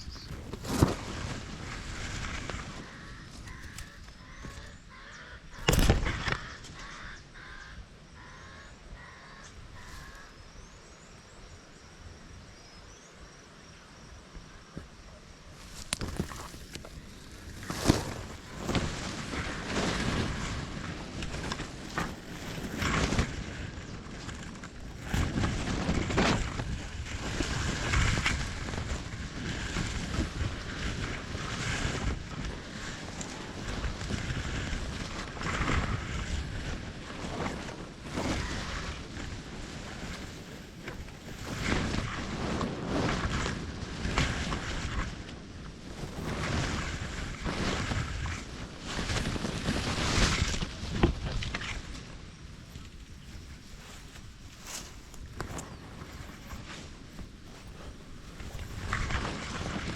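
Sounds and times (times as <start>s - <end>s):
bird calling: 0.0s - 1.0s, 2.4s - 11.4s, 14.8s - 20.2s
wind buffeting microphone: 0.0s - 12.4s, 14.0s - 59.9s.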